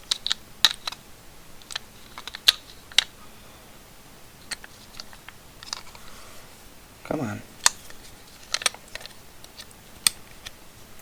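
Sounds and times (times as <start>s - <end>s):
batteries clicking into compartment: 1.6s - 3.1s, 7.6s - 10.6s.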